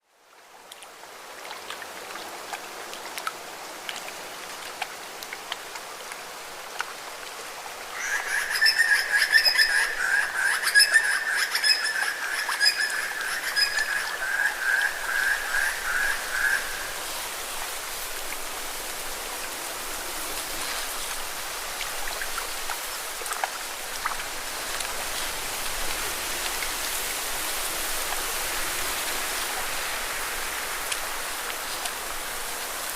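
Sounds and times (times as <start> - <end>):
water drips and ticks: 0.3 - 32.9
falling water hissing: 13.2 - 32.9.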